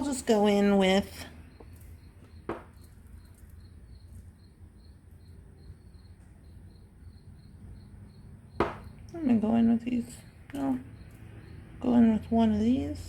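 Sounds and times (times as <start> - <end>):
cricket chirping: 0.0 - 13.0.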